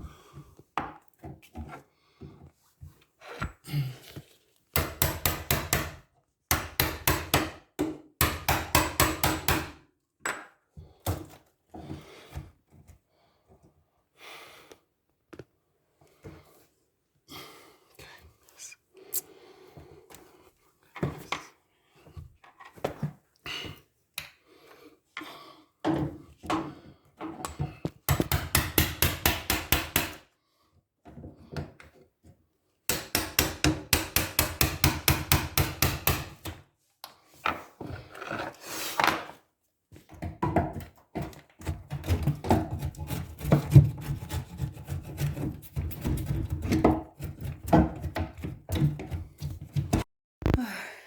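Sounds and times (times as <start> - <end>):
knocks and scrapes on wood: 40.0 - 50.1.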